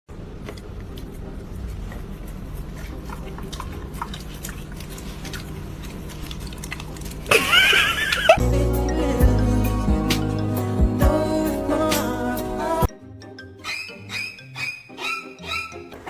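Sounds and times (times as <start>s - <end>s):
dog chewing and biting: 0.3s - 7.4s
wavering high-pitched cry: 13.6s - 16.0s.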